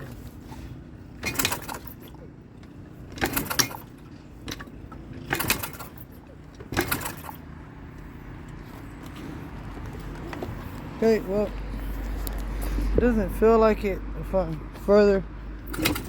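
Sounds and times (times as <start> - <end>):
dirt bike engine turning over: 1.2 - 7.5, 15.7 - 16.0.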